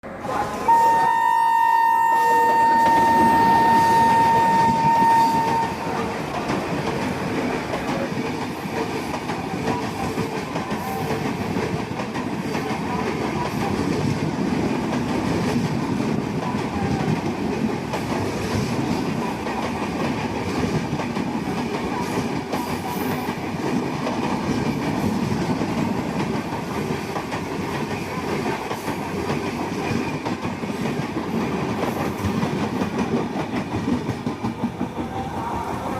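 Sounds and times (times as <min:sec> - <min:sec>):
train rumbling on rails: 0:00.0 - 0:35.9
locomotive horn: 0:00.4 - 0:06.1.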